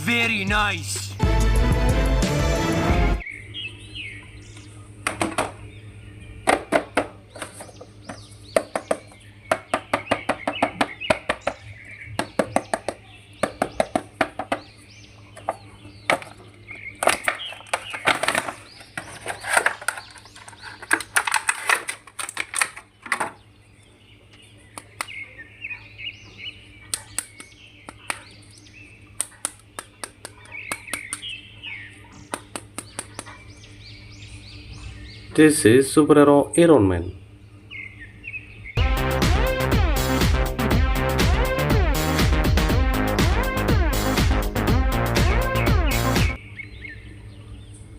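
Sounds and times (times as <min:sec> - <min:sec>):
birds chirping: 0:00.0 - 0:47.9
steady low hum: 0:02.9 - 0:21.2, 0:22.8 - 0:47.9
hard plastic clicking and rattling: 0:17.0 - 0:23.4.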